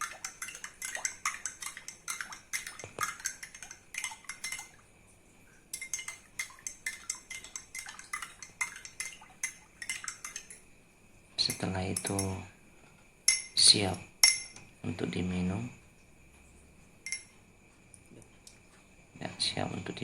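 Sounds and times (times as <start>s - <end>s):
metal spoon clinking while stirring: 0.0s - 4.8s, 5.7s - 10.7s, 11.4s - 12.4s, 13.3s - 14.7s, 17.0s - 17.3s.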